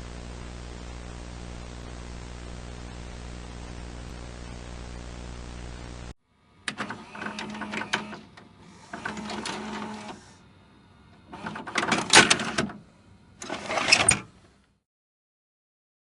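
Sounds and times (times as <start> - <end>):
tape mechanism whirring and clicking: 6.7 - 10.4, 13.4 - 14.2.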